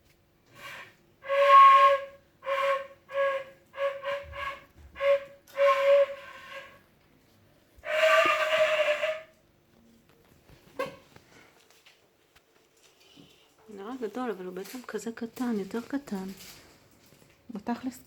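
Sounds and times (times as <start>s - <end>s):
breathy high squeaks: 7.8s - 9.3s.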